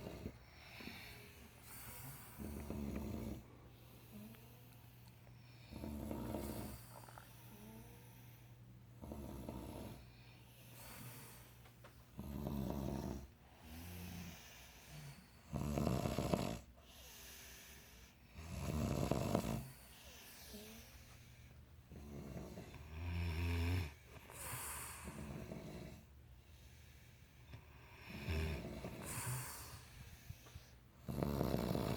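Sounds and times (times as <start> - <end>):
people snoring: 0.0 - 4.5, 5.6 - 7.9, 12.2 - 17.2, 18.4 - 20.8, 21.9 - 26.1, 27.8 - 31.9
quiet breathing: 0.0 - 31.9.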